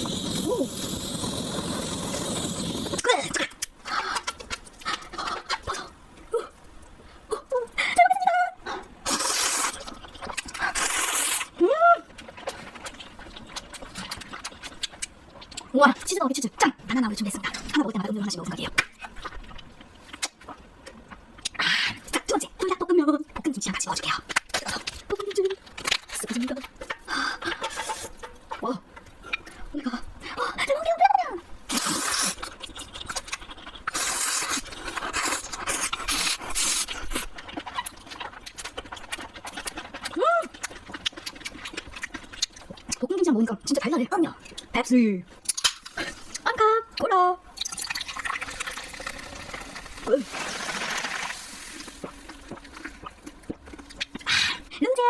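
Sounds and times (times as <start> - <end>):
person slurping noodles: 0.0 - 4.3, 9.0 - 11.6, 31.7 - 37.3
noodles being slurped: 0.0 - 5.9, 9.0 - 16.0, 31.7 - 43.5, 47.6 - 54.7
wet chewing clicks: 1.0 - 5.9, 8.8 - 16.7, 17.3 - 22.7, 31.7 - 50.0, 50.8 - 55.0.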